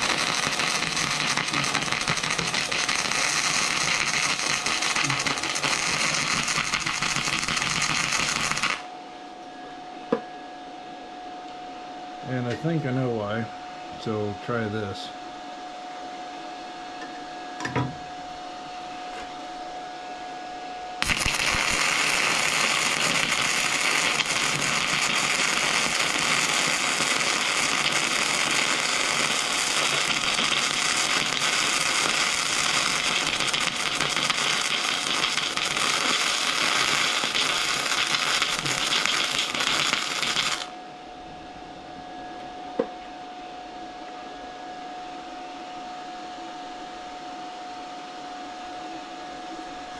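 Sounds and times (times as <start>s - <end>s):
welding arc crackling hiss: 0.0s - 8.9s, 21.0s - 40.8s.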